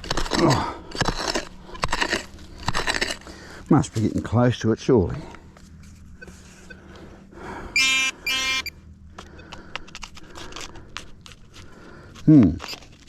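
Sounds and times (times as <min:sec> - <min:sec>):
soil scraping and clicking: 0:00.0 - 0:04.4, 0:09.2 - 0:13.0
metal detector buzzy tones: 0:07.8 - 0:08.7.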